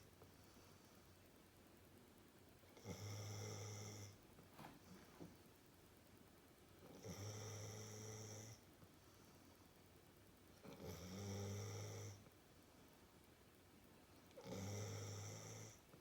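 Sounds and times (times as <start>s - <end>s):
dog snoring: 2.8s - 4.2s, 6.8s - 8.7s, 10.6s - 12.2s, 14.4s - 15.8s.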